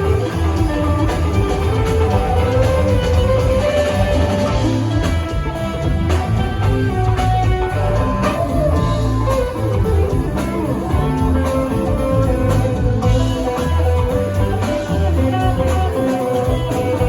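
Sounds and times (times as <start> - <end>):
bass and drums: 0.0 - 17.0
electric guitar lead: 0.0 - 17.0.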